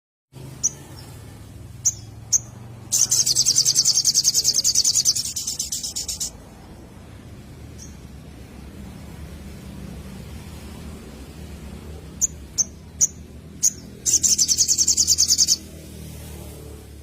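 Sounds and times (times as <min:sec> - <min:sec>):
rapid high bird trill: 0:00.4 - 0:06.4, 0:12.1 - 0:15.8
bird chirps: 0:00.5 - 0:06.4, 0:07.7 - 0:08.1, 0:12.1 - 0:15.8.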